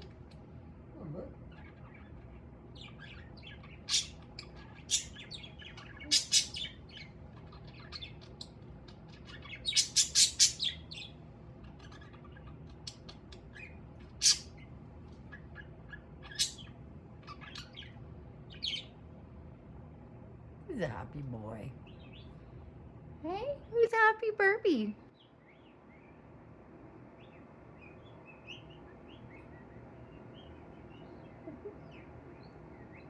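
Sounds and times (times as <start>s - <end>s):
budgerigar chattering: 2.8s - 7.1s, 7.7s - 11.1s, 14.2s - 14.6s, 15.9s - 16.7s
budgerigar sharp calls: 2.8s - 8.5s, 9.1s - 11.1s, 13.6s - 14.6s.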